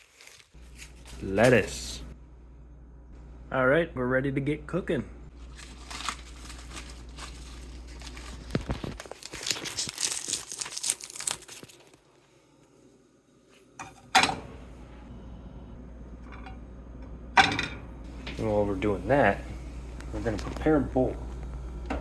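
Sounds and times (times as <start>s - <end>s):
plastic or paper crinkling: 0.0s - 1.9s, 5.4s - 12.0s.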